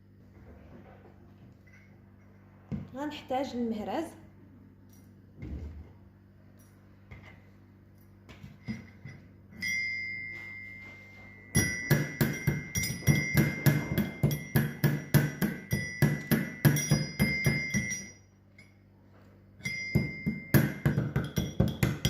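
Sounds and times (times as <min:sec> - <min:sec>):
metal mortar ringing: 0:11.5 - 0:18.8, 0:19.6 - 0:22.0
pestle pounding in metal mortar: 0:11.6 - 0:18.1, 0:19.7 - 0:22.0.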